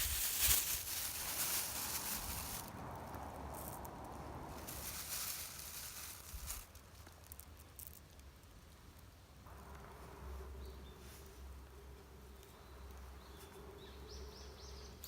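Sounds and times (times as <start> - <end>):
wind rumble on microphone: 0.0 - 6.8.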